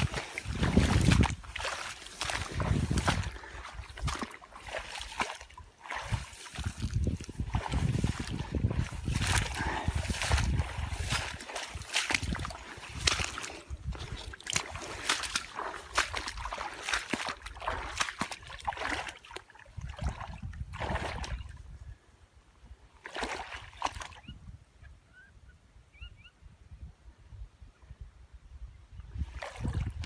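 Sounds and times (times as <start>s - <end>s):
wind on microphone: 0.0s - 5.3s, 5.9s - 19.0s, 19.7s - 22.0s, 23.8s - 24.8s, 25.5s - 30.0s
water sloshing and splashing: 0.0s - 21.6s, 23.0s - 24.2s, 29.2s - 30.0s
faint bird chirps: 24.2s - 26.8s.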